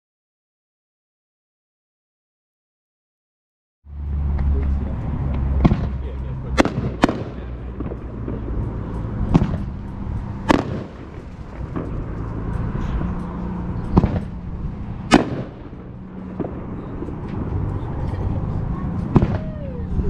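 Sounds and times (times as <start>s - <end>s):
firework bangs: 5.4s - 12.5s, 13.9s - 17.7s, 19.0s - 19.5s
small firework pops: 6.6s - 8.5s, 9.3s - 9.7s, 10.4s - 12.0s, 13.9s - 14.4s, 19.1s - 19.5s.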